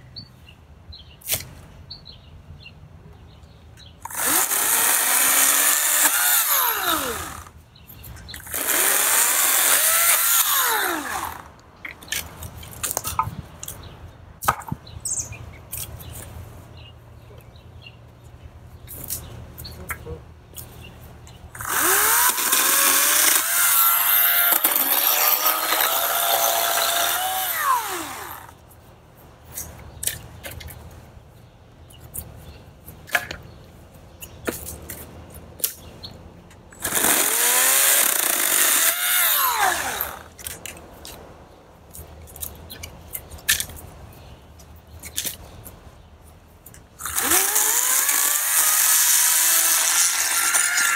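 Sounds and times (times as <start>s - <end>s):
electric chainsaw motor whining: 4.1s - 7.5s, 8.4s - 11.5s, 21.6s - 28.5s, 36.8s - 40.3s, 47.0s - 50.9s.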